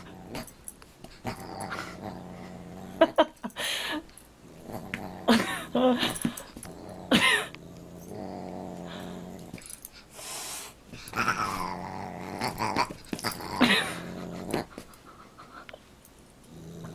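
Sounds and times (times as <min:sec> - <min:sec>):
dog growling: 0:00.0 - 0:00.5, 0:01.2 - 0:03.3, 0:04.4 - 0:09.8, 0:11.1 - 0:15.0, 0:16.4 - 0:16.9.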